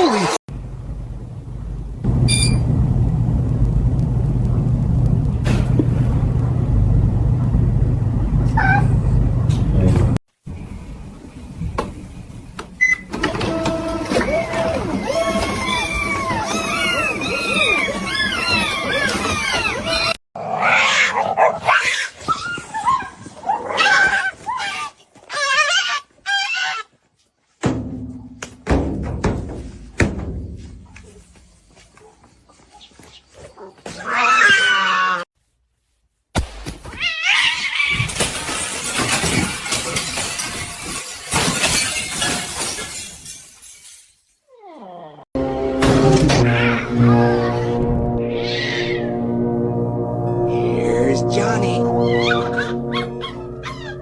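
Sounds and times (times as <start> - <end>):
low engine-like rumble: 0.5 - 12.3
low hum: 0.5 - 12.5, 45.4 - 54.0
short high beep: 2.3 - 2.7
animal crying: 8.6 - 9.0, 13.3 - 23.0, 23.7 - 26.9, 33.9 - 35.3, 37.0 - 38.0, 46.4 - 49.1, 52.0 - 54.0.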